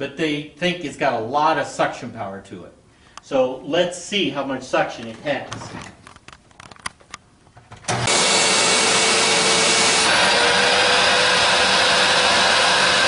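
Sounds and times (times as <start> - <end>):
vacuum cleaner motor whining: 7.9 - 13.0.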